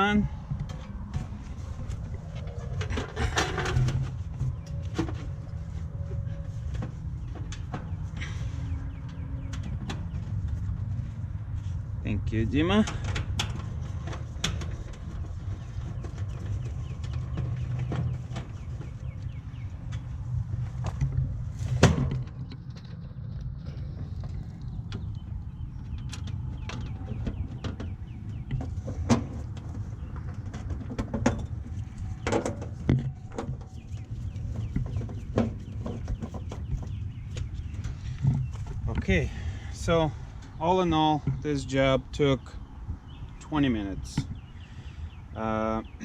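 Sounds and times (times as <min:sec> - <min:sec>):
steady low rumble: 0:00.0 - 0:46.0
handling knocks and clatters: 0:00.6 - 0:08.4, 0:12.8 - 0:39.1
small birds chirping: 0:04.2 - 0:12.7, 0:13.6 - 0:20.8, 0:22.3 - 0:46.0.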